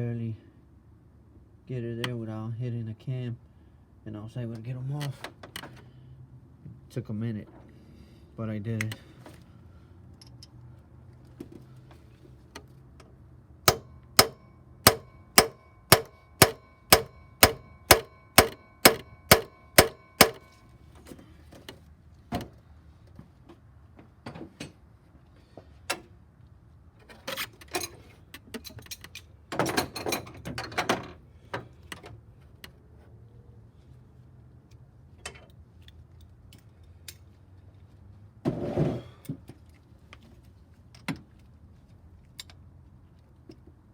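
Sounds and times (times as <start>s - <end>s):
metal knocks: 13.7s - 20.5s
hammer striking metal tool: 13.7s - 20.6s
tools clattering: 13.7s - 20.6s, 27.0s - 31.1s.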